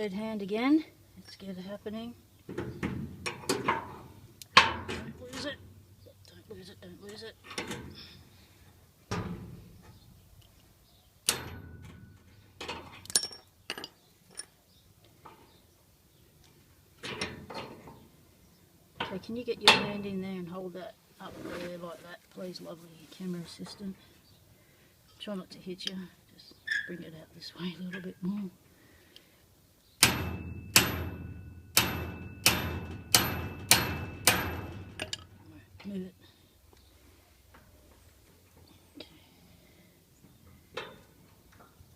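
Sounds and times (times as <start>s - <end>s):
hammer striking metal padlock: 11.3s - 12.1s, 30.0s - 35.2s.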